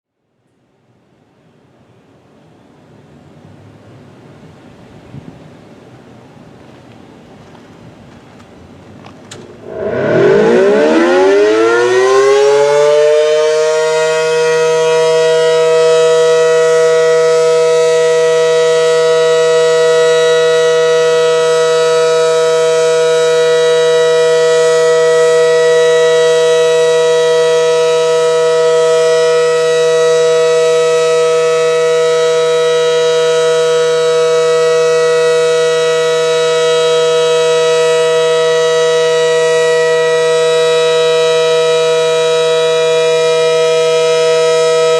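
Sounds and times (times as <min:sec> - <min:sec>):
warning siren winding up: 0:09.3 - 0:44.9.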